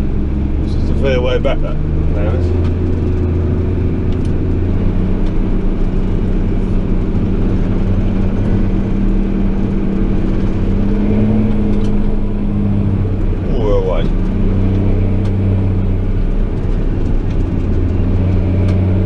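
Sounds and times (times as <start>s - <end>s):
tractor engine running: 0.0s - 19.0s.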